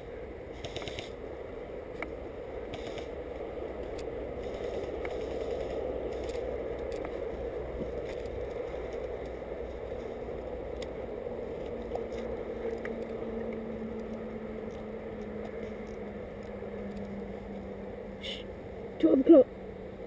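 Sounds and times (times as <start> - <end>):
faint steady hum: 0.0 - 20.0
clothing and gear rustling: 3.8 - 17.7.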